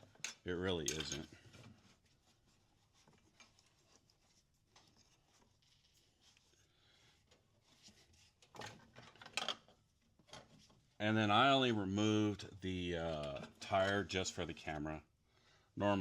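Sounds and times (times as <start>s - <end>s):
handling noises: 0.0s - 6.6s.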